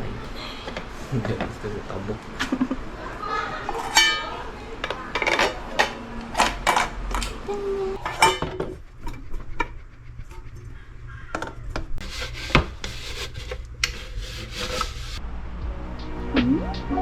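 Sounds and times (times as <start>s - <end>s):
rubbing and scraping handling noise: 12.0s - 15.2s.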